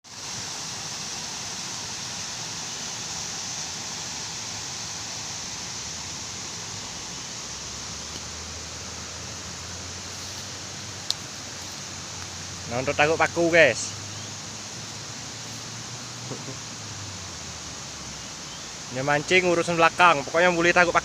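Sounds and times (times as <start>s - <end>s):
outdoor background hiss: 0.0s - 21.0s.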